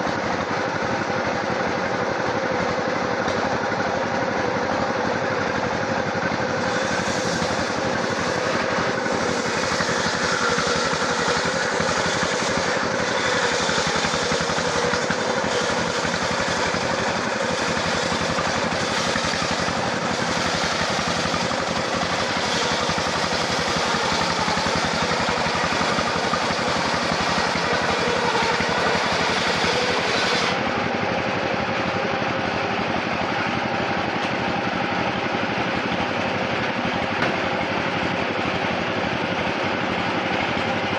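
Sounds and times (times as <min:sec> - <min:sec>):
sawmill machinery droning: 0:00.0 - 0:40.9.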